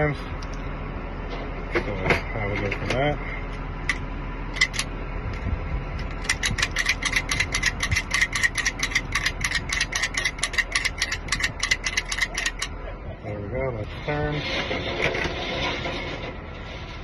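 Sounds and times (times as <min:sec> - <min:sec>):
lock pick gun clicking: 0:06.2 - 0:12.7.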